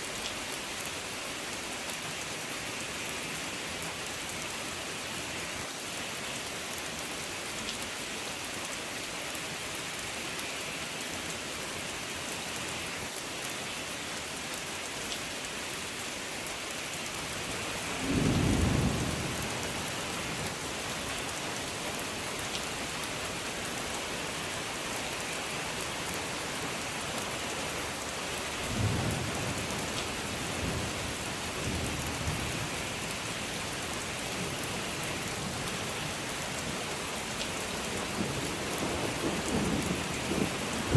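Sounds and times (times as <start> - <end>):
steady rain falling: 0.0 - 40.9
thunder rumbles: 18.0 - 19.8, 38.1 - 40.9.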